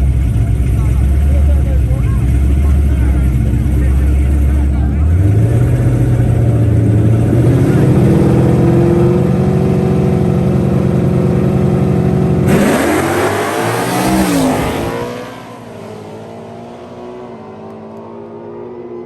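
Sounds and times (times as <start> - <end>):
drag racing cars revving: 0.0 - 19.0
loud exhaust burst: 12.4 - 16.2.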